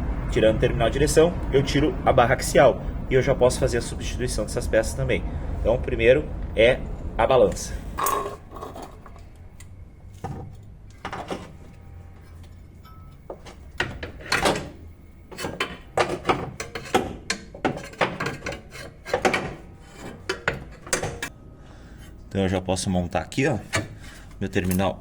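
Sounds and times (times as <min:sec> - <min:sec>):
metallic clunks and scrapes: 0:08.0 - 0:09.3, 0:10.2 - 0:21.3.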